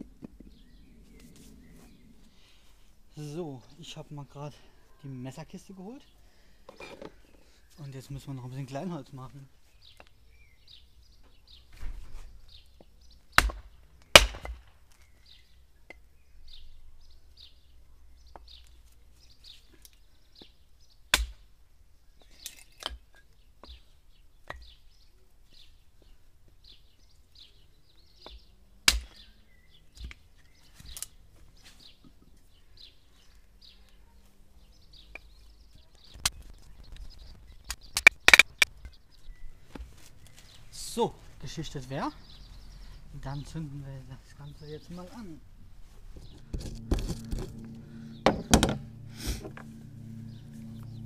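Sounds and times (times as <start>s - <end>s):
wood chopping strikes: 13.4s - 14.8s, 21.1s - 21.5s, 28.2s - 29.2s, 48.2s - 49.7s
small bird chirping: 23.2s - 40.7s.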